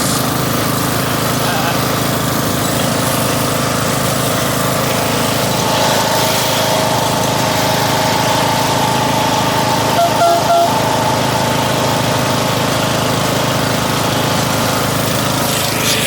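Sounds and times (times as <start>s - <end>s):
small engine running: 0.0s - 16.0s
higher whine: 5.4s - 12.4s.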